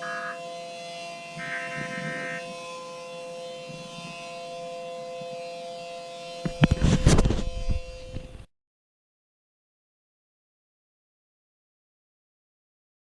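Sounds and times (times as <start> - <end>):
held attention tones: 0.0 - 0.4, 1.2 - 2.5
loud crackling noise burst: 1.4 - 2.4.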